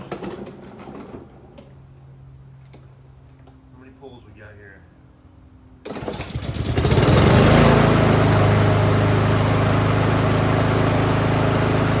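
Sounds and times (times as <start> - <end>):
lawn mower engine running: 0.0 - 2.1, 5.8 - 12.0
starter cord pull: 5.9 - 6.5.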